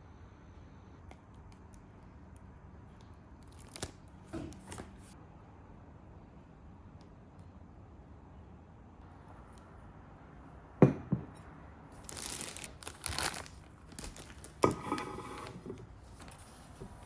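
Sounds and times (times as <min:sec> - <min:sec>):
wrapping crinkling and tearing: 0:03.4 - 0:04.0, 0:12.0 - 0:14.7
rustling: 0:12.0 - 0:17.0.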